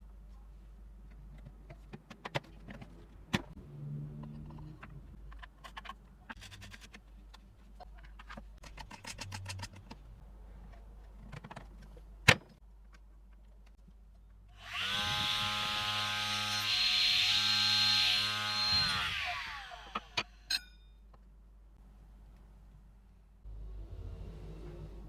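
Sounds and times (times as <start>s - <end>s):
electric motor saw spinning: 14.6s - 20.5s.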